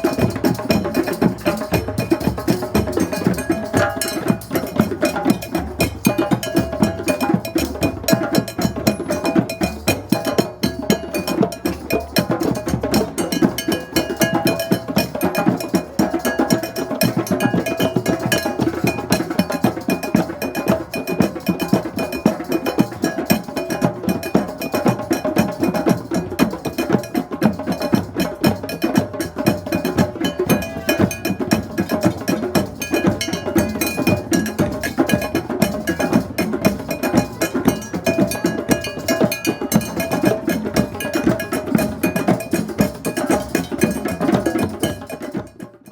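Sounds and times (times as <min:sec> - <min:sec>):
cowbell ringing: 0:00.0 - 0:45.7
drum circle playing: 0:00.0 - 0:45.9.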